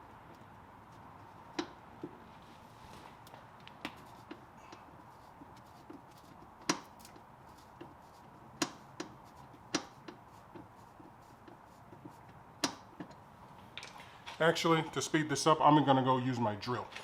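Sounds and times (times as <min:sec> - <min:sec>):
screwdriver clicks and taps: 0:12.6 - 0:13.2.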